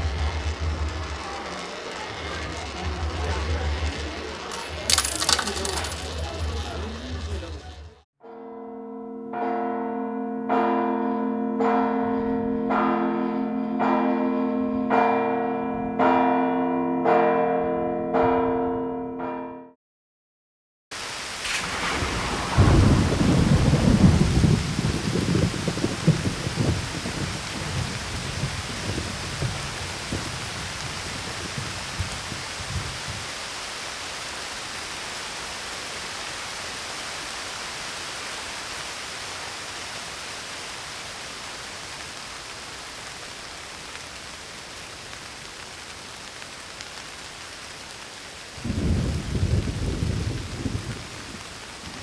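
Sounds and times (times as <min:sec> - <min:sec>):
rain hiss: 0:00.0 - 0:06.9, 0:20.9 - 0:52.0
thunder rumbling: 0:21.2 - 0:33.3, 0:48.6 - 0:52.0.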